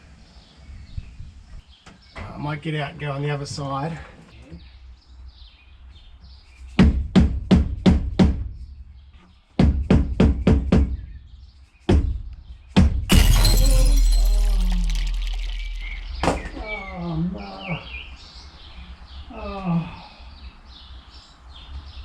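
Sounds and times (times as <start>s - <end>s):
glass shattering: 13.1s - 17.0s.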